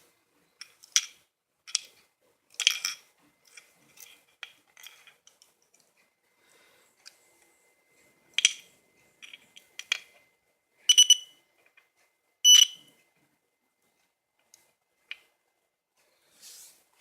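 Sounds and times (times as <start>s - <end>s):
high-pitched buzzer bursts: 12.5s - 12.8s.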